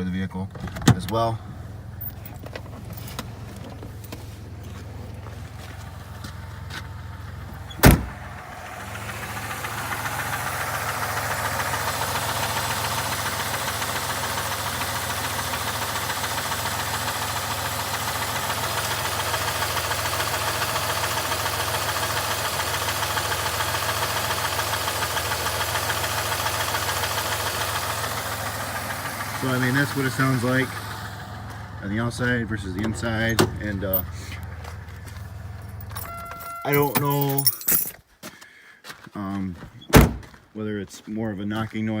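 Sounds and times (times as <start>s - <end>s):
car engine idling with knock: 0.6s - 37.9s
loud slam: 7.8s - 8.2s.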